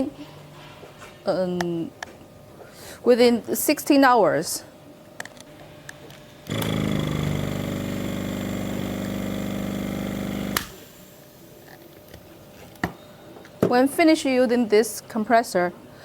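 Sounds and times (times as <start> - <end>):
air compressor humming: 6.4 - 12.6
compressor switch click: 10.3 - 10.9.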